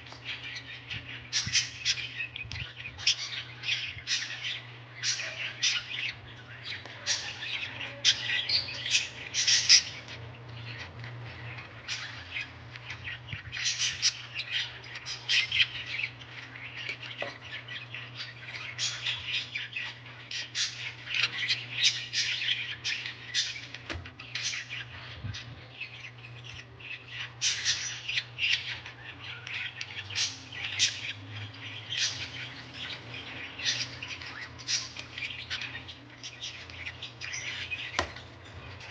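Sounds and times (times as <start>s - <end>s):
small birds chirping and squawking: 0.0s - 38.9s.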